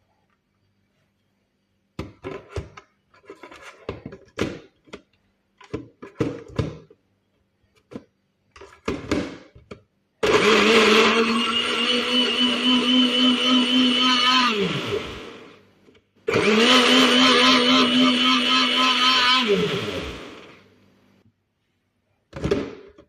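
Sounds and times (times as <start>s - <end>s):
electric blender whining: 10.2s - 15.6s, 16.3s - 20.6s.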